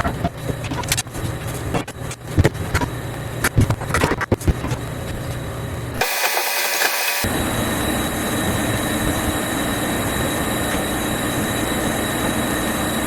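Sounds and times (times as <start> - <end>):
heater humming: 5.3 - 13.0
hiss: 6.0 - 7.3.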